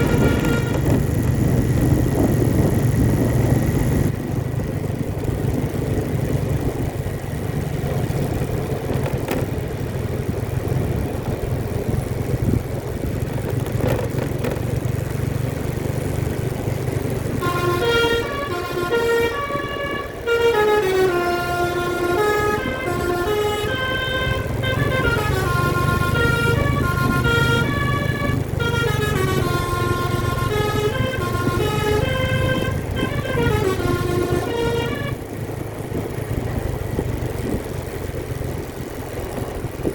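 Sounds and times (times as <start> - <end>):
musical bus horn tune: 0.0 - 1.2, 17.3 - 35.3
road noise: 0.0 - 39.9
vehicle engine running: 0.0 - 39.9.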